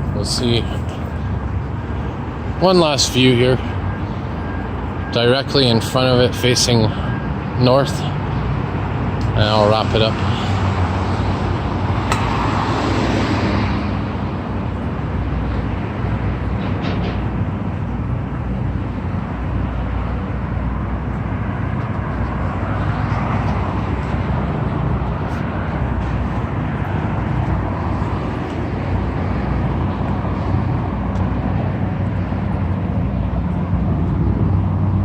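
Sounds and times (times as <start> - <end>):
city street traffic rumble: 0.0 - 35.0
vehicle passing: 5.9 - 16.6.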